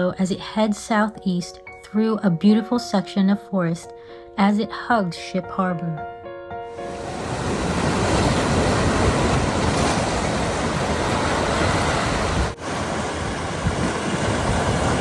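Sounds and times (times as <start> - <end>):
surf breaking on rocks: 6.8 - 15.0.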